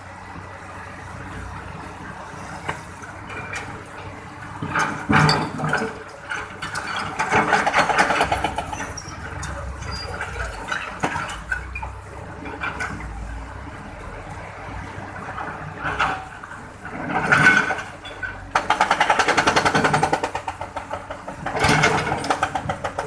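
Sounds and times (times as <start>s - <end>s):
excavator engine running: 0.0s - 23.0s
clattering and scraping: 4.6s - 13.0s, 15.4s - 23.0s.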